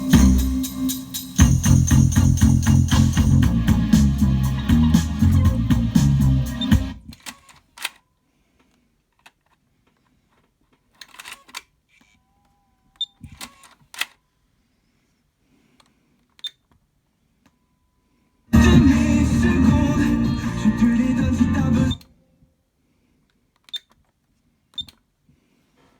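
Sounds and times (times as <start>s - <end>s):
music: 0.0s - 7.0s, 18.5s - 22.0s.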